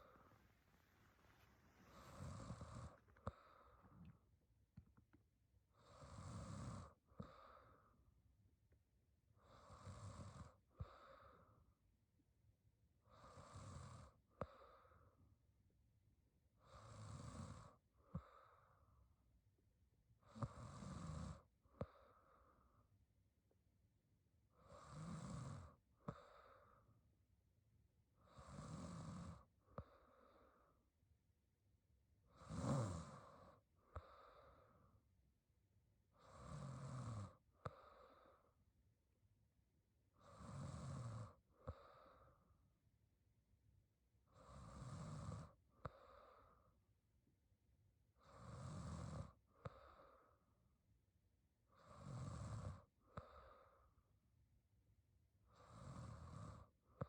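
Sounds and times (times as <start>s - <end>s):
woman snoring quietly: 0.0s - 4.1s, 5.8s - 7.5s, 9.4s - 11.4s, 13.1s - 14.5s, 16.6s - 18.3s, 20.3s - 21.5s, 24.6s - 26.5s, 28.2s - 29.9s, 32.3s - 34.7s, 36.2s - 38.4s, 40.2s - 42.3s, 44.3s - 46.5s, 48.2s - 50.2s, 51.7s - 53.8s, 55.5s - 56.8s
soft breath out: 0.0s - 4.3s, 33.3s - 34.9s, 37.6s - 38.6s, 41.6s - 42.5s, 45.8s - 46.8s, 49.6s - 50.5s, 53.1s - 54.0s.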